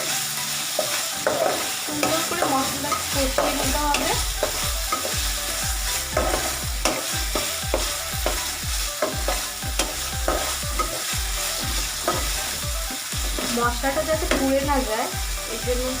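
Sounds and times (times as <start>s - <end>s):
spice paste sizzling in oil: 0.0s - 16.0s
spatula scraping a pan: 0.6s - 12.6s.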